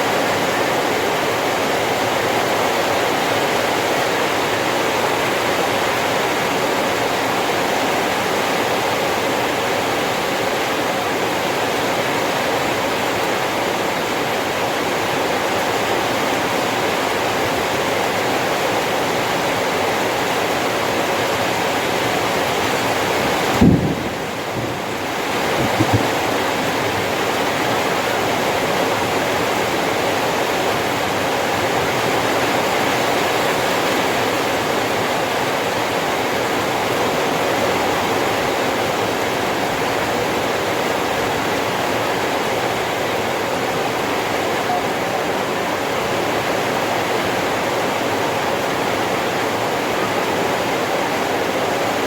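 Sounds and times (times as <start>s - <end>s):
heavy rain falling: 0.0s - 52.0s
brief knocks: 25.5s - 26.2s.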